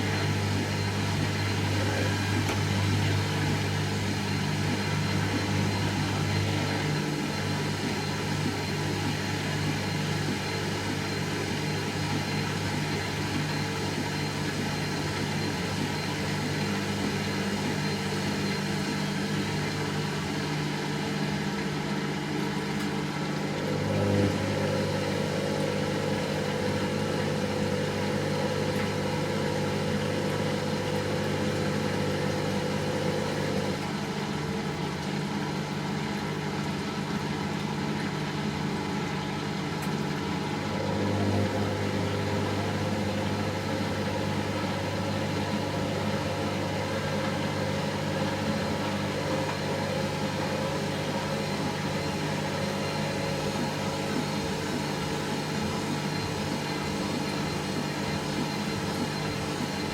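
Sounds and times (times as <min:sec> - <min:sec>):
washing machine spin hum: 0:00.0 - 0:59.9.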